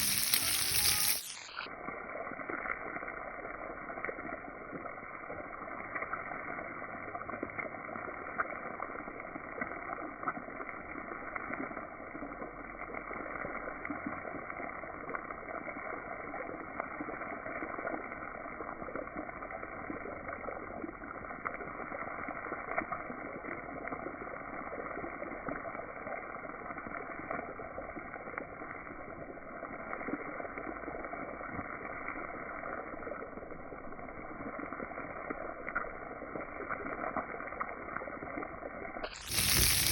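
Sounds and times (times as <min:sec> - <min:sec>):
muffled rushing water: 0:30.8 - 0:39.9.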